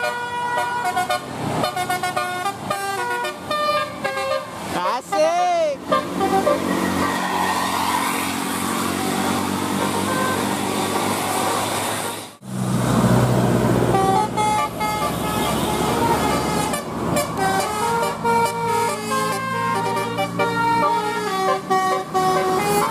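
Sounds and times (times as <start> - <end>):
multi-tone bus horn playing a tune: 0.0 - 7.1, 9.7 - 11.0, 13.8 - 22.9
traffic noise: 0.0 - 22.9
bus engine running: 5.7 - 22.9.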